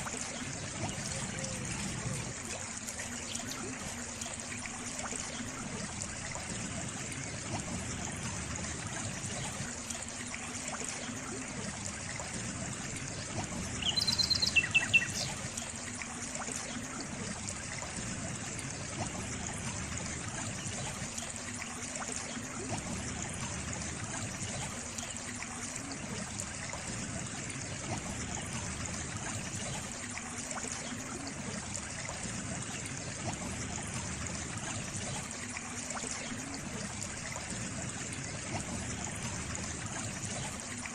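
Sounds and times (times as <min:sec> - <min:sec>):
stream trickling: 0:00.0 - 0:40.9
bird chirping: 0:13.8 - 0:15.4.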